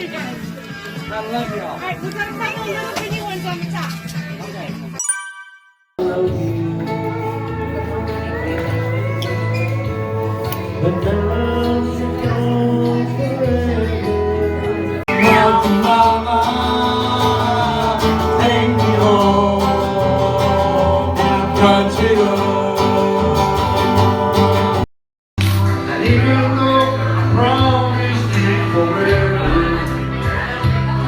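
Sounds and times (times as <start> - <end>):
country music led by guitar: 6.0 - 24.8, 25.4 - 31.0.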